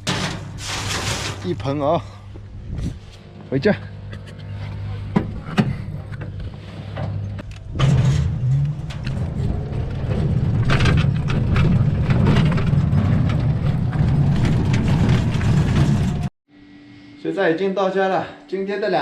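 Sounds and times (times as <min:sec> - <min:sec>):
vehicle engine drone: 0:02.1 - 0:16.3.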